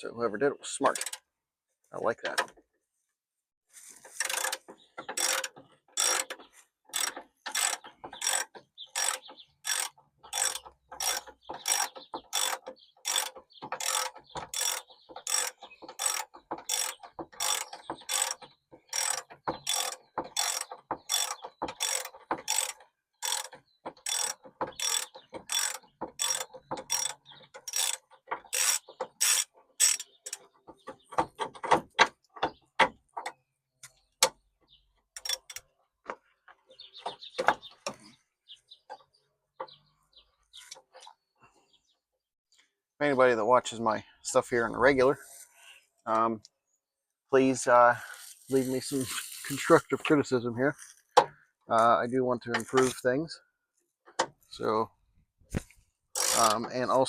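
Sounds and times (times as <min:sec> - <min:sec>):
ratchet wrench clicking: 0:04.2 - 0:30.4, 0:56.2 - 0:56.5.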